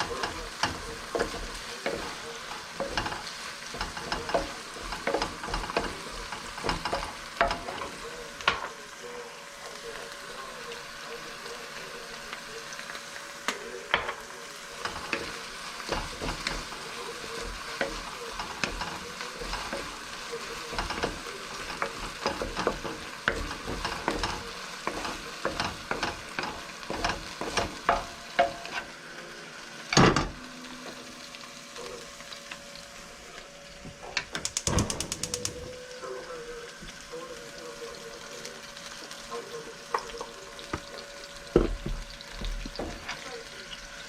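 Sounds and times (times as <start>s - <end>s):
spatula scraping a pan: 0.0s - 8.7s, 14.1s - 29.0s
fried rice sizzling in a pan: 0.0s - 44.0s
spatula clicking against pan: 34.4s - 35.6s.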